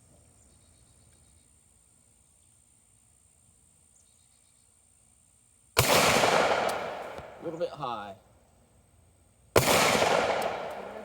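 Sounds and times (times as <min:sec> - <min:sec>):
loud pistol shot: 0:05.8 - 0:07.5, 0:09.6 - 0:11.0.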